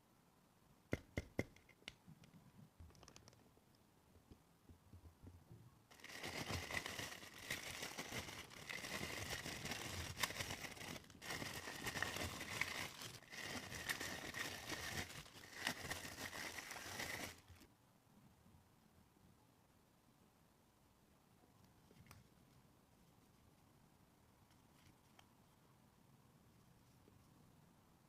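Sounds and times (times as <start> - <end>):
packaging crinkling: 5.9 - 17.6.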